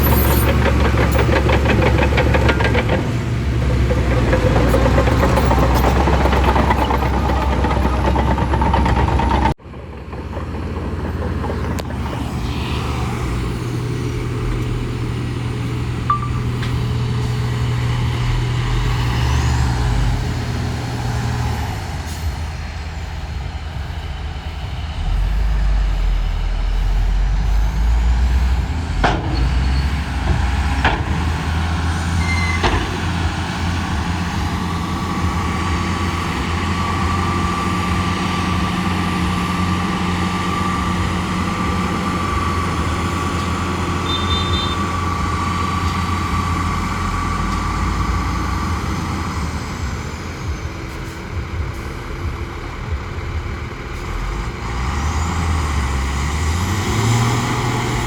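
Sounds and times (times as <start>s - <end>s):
bulldozer diesel engine running: 0.0s - 58.0s
sharp metallic clanks: 16.0s - 17.0s.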